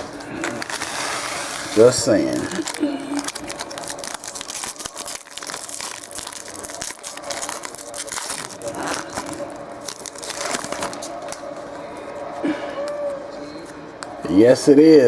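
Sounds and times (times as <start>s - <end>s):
plastic wrapper crinkling and tearing: 0.2s - 11.5s.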